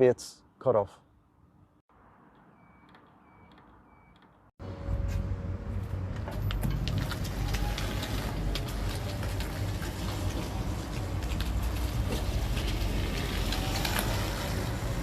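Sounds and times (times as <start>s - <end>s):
faint beep: 2.5s - 4.3s
scooter riding rumble: 4.6s - 15.0s.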